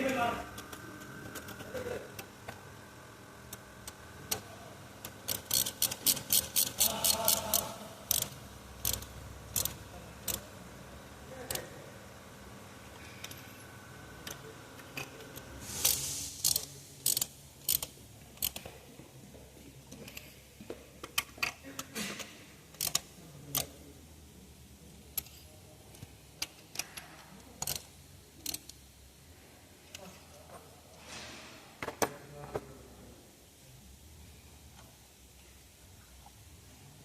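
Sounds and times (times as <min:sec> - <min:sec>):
socket ratchet clicking: 0:05.2 - 0:10.4, 0:15.8 - 0:18.7, 0:22.7 - 0:23.7, 0:27.6 - 0:28.8.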